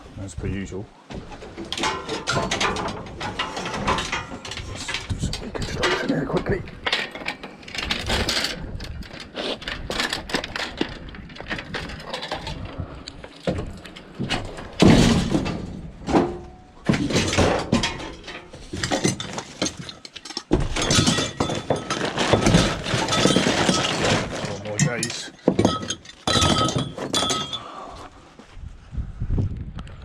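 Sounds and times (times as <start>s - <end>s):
scrap metal clanking and clattering: 1.1s - 28.1s
metal crash: 14.6s - 27.6s.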